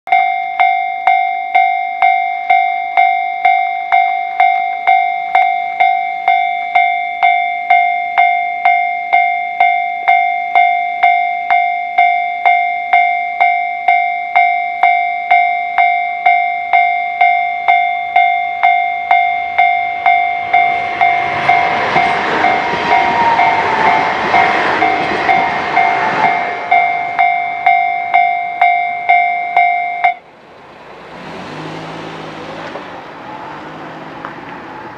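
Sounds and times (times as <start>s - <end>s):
level-crossing electronic bell: 0.1s - 30.2s
diesel train passing: 14.3s - 34.9s.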